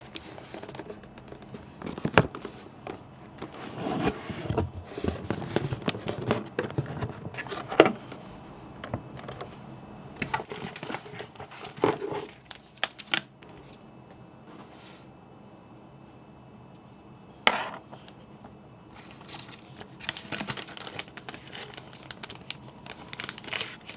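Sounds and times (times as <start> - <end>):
cardboard packaging rustling: 0.0 - 9.6, 10.2 - 13.3, 18.9 - 23.9.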